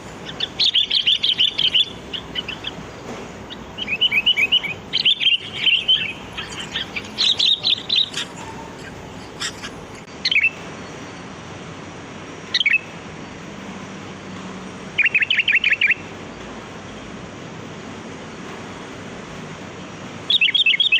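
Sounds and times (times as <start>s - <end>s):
bulbul chirping: 0.2s - 10.5s.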